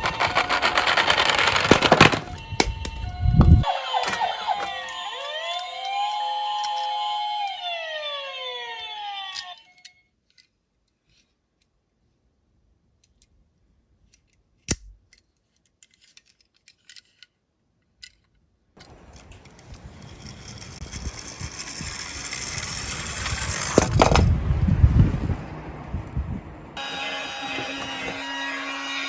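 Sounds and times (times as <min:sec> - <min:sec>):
toy cars rolling down track: 0:00.0 - 0:10.0, 0:18.8 - 0:24.4.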